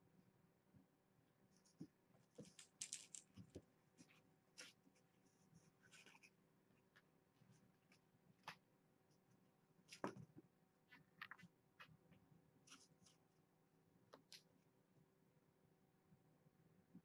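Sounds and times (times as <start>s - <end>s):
kittens scratching and rustling: 1.6s - 8.7s, 9.8s - 13.3s.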